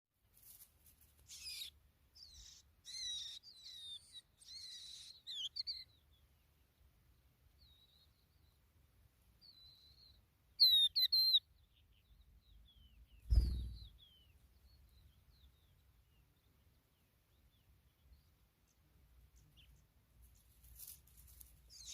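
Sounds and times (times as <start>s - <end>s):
skylark chirps and trills: 1.3s - 6.6s, 7.5s - 8.7s, 9.4s - 21.9s
dull thump: 13.3s - 13.9s.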